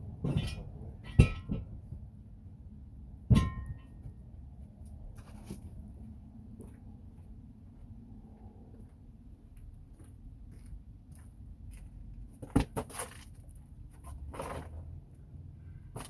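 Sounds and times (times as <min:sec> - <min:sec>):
metal clanks with metallic ring: 0:00.2 - 0:01.8, 0:03.3 - 0:04.1.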